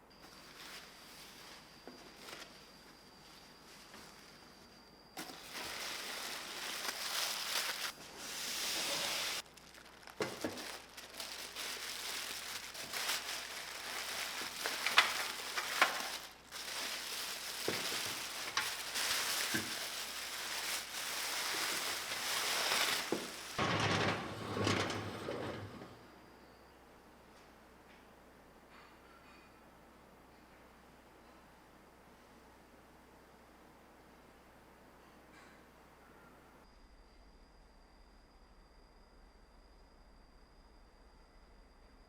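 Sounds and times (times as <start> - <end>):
scratchy hissing scraping on metal: 8.1 - 9.4.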